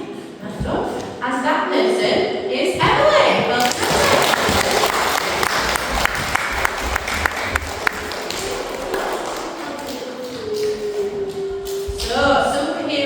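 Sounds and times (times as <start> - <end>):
children clapping: 3.5 - 12.3.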